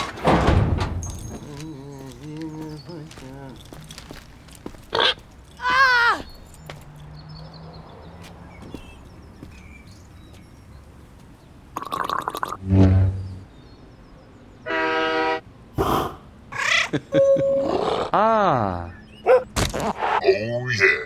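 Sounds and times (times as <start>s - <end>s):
deep horn-like blast: 12.6s - 13.4s
higher horn-like tone: 12.6s - 13.4s, 17.2s - 18.0s.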